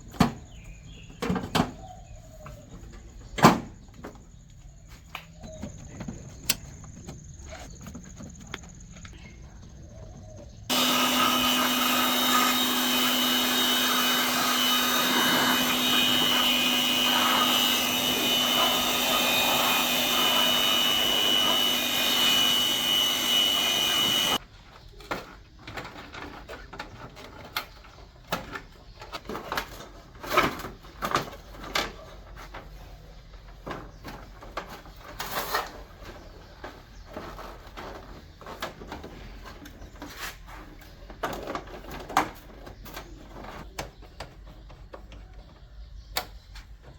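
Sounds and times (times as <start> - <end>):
motor-driven tool whining: 10.7 - 24.4.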